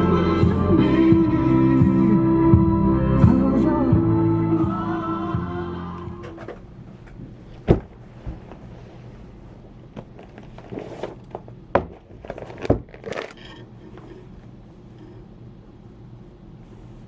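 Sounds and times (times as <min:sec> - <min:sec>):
steady low hum: 0:00.0 - 0:17.0
knocks of things being handled: 0:06.2 - 0:08.5, 0:11.3 - 0:13.3.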